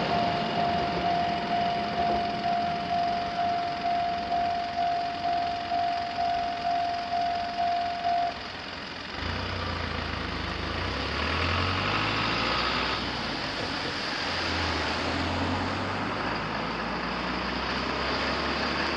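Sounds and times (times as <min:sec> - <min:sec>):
level crossing bell chiming: 0:00.0 - 0:08.4
road noise: 0:00.0 - 0:18.9
vehicle engine running: 0:00.0 - 0:18.9.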